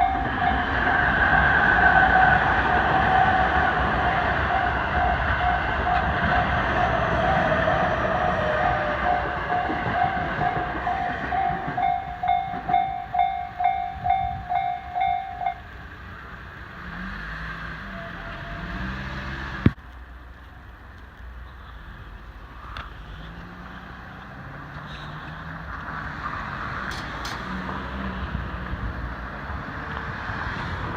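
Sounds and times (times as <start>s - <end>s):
train passing: 0.0s - 19.7s, 22.0s - 30.9s
road traffic: 0.0s - 30.9s
level crossing bell ringing: 9.0s - 15.6s.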